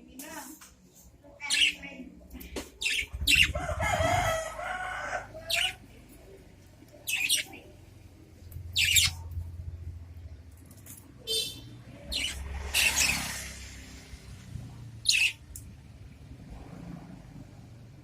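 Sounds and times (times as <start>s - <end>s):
budgerigars chirping and warbling: 1.4s - 1.8s, 2.8s - 5.9s, 7.0s - 7.8s, 8.6s - 9.4s, 11.4s - 13.4s, 15.0s - 15.5s.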